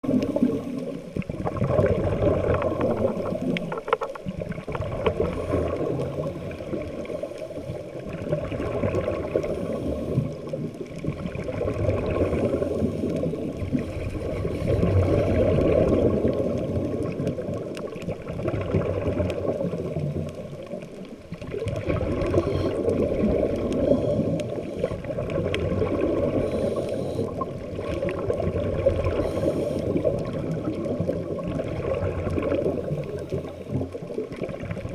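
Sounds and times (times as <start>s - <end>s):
bubbles gurgling underwater: 0.0s - 34.9s
diver breathing through regulator: 9.3s - 10.5s, 12.1s - 16.0s, 22.1s - 25.1s, 26.1s - 27.6s, 29.0s - 30.3s.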